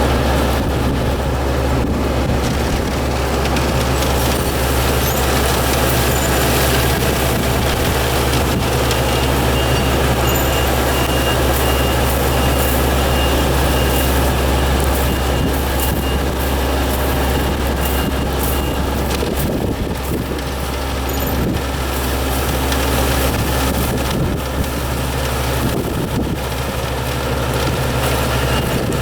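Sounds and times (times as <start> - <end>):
farm machine engine running: 0.0 - 29.0
high electronic warning beeps: 4.0 - 19.2.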